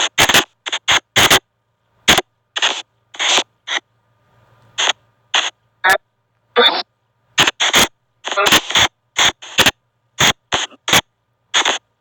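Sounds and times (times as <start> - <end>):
choppy bursts of garbled radio hiss: 0.0 - 3.8, 4.8 - 6.0, 6.6 - 12.0.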